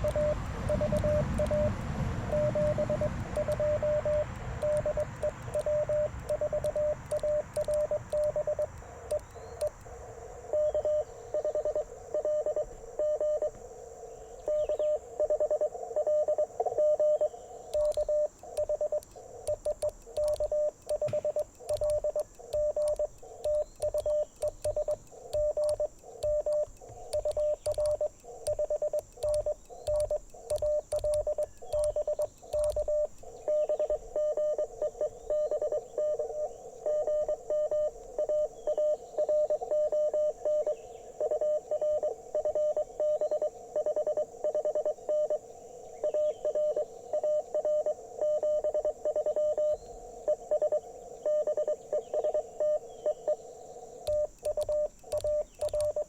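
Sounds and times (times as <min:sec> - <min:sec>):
keying clicks and thumps: 0:00.0 - 0:01.8, 0:02.4 - 0:09.9, 0:17.7 - 0:33.3, 0:54.1 - 0:56.0
morse code beeps: 0:00.0 - 0:09.8, 0:10.5 - 0:13.6, 0:14.4 - 0:45.4, 0:46.0 - 0:53.4, 0:54.0 - 0:56.0
lower-pitched morse signal: 0:00.0 - 0:56.0.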